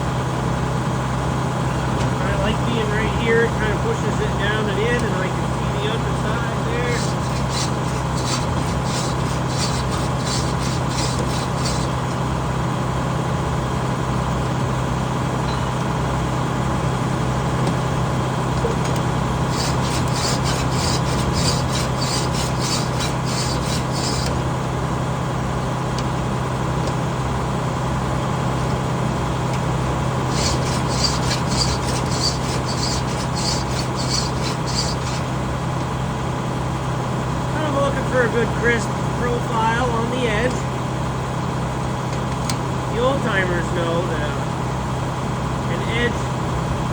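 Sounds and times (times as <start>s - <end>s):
engine humming: 0.0s - 46.9s
hand file sharpening saw teeth: 6.9s - 12.2s, 19.5s - 24.4s, 30.3s - 35.4s.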